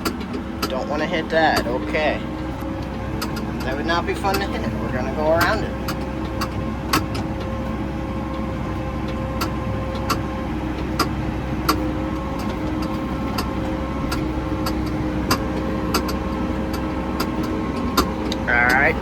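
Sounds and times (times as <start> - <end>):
seat clicking: 0.0 - 19.0
tractor engine running: 0.0 - 19.0.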